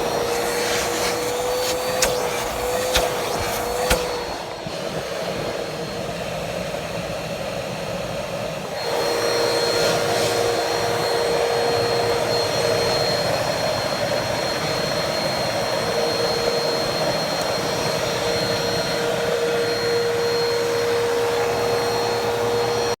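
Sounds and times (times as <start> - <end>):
vacuum cleaner whining: 0.0 - 23.0.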